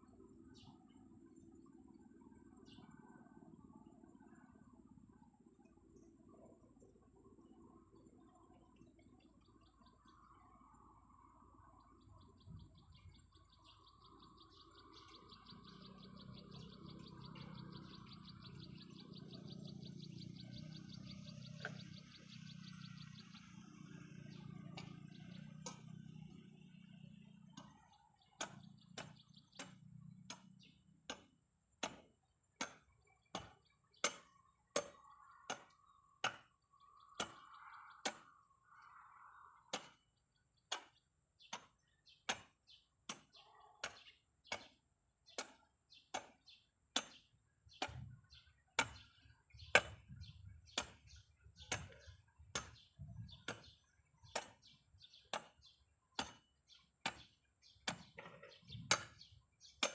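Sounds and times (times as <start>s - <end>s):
rhythmic chopping strikes: 20.7s - 38.5s, 39.6s - 59.9s.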